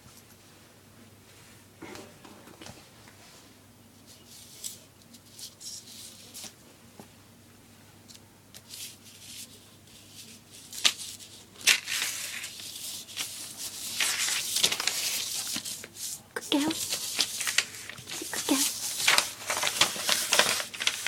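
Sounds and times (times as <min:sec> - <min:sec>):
paper rustling and crinkling: 0:04.0 - 0:06.6, 0:08.5 - 0:21.0
sharp paper crackles: 0:08.6 - 0:21.0.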